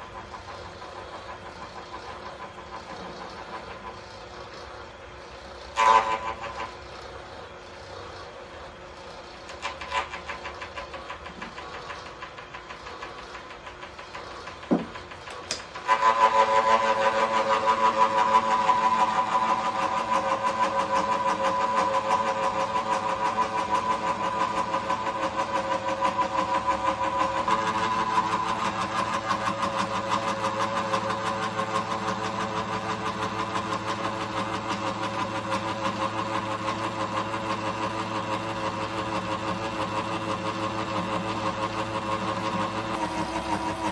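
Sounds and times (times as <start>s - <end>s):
milling machine running: 0.0s - 43.9s
knock: 14.7s - 15.0s.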